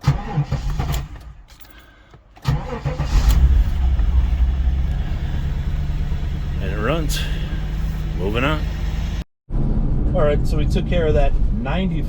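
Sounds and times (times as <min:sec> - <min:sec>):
starter motor cranking: 0:00.0 - 0:06.6
car engine running: 0:00.0 - 0:09.2.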